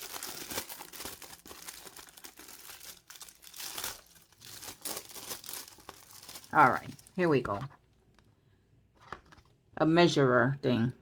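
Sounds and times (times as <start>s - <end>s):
packaging crinkling: 0.0s - 7.3s.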